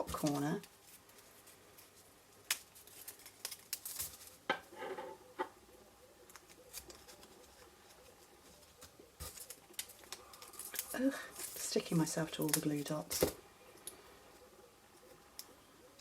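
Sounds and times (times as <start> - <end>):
paper rustling: 6.3 - 13.3.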